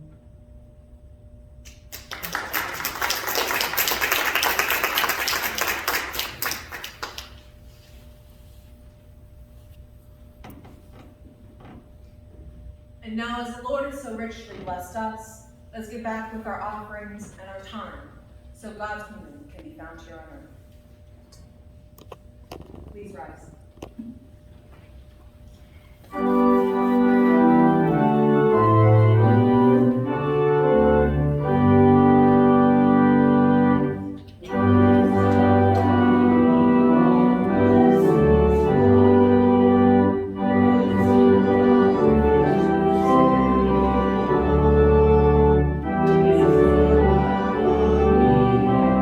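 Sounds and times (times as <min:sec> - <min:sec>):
organ playing slow chords: 0:26.0 - 0:49.0.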